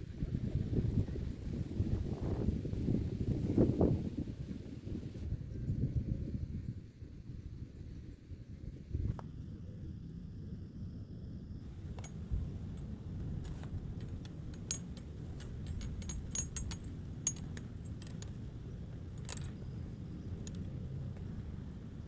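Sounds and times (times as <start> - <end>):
steady low rumble: 0.0 - 22.0
hard objects clicking and clinking: 13.4 - 18.5, 19.1 - 19.8.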